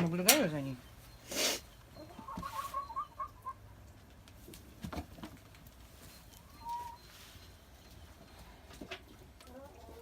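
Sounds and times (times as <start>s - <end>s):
chickens clucking: 0.0s - 10.0s.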